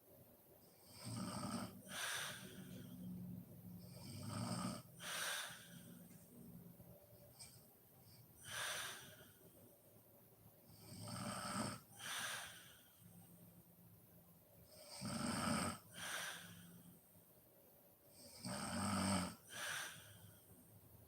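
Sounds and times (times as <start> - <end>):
woman snoring: 0.8 - 3.0, 3.8 - 5.9, 10.8 - 12.8, 14.7 - 16.8, 18.2 - 20.3.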